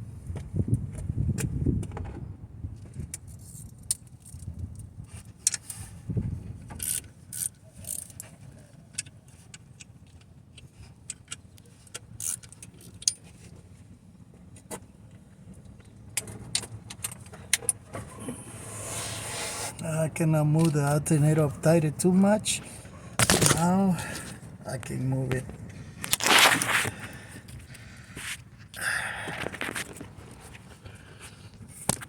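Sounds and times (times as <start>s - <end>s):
metallic clicks and clinks of tools: 8.9s - 13.3s.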